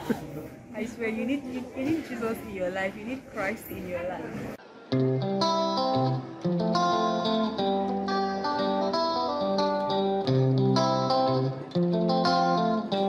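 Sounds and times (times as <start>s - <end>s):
plucked guitar tune: 4.7s - 13.0s.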